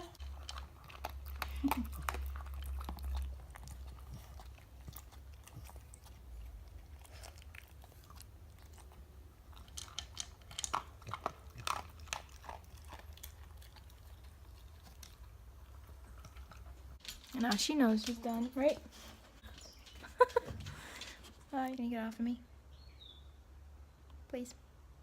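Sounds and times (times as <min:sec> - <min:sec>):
dog crunching dry food: 0:00.0 - 0:18.8.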